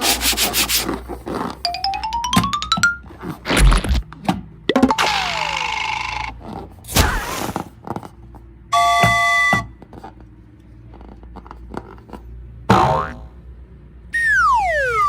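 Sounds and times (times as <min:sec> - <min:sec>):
sharp hit: 0:06.9 - 0:07.6
falling whistle: 0:08.8 - 0:09.7, 0:14.2 - 0:15.0.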